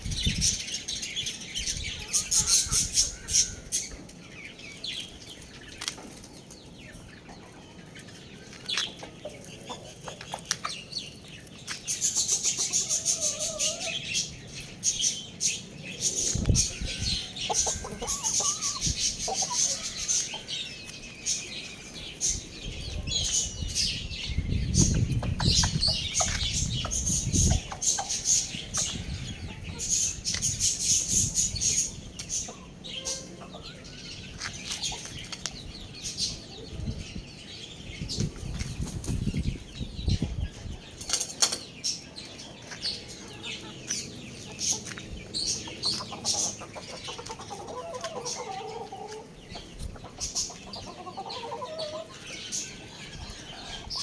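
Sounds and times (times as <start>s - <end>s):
chickens clucking: 0.3s - 37.1s, 37.9s - 54.0s
chickens flapping and scuffling: 5.0s - 13.8s, 38.2s - 41.6s, 42.4s - 52.2s.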